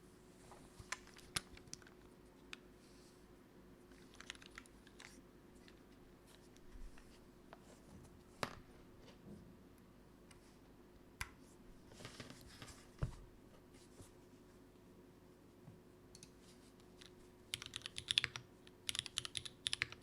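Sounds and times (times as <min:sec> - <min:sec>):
mechanical keyboard keystrokes: 0:17.5 - 0:20.0.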